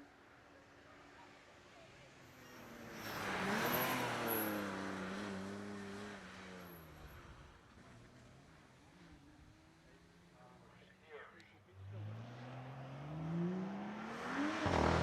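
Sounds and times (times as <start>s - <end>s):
car accelerating past: 2.4s - 6.6s, 11.8s - 15.0s.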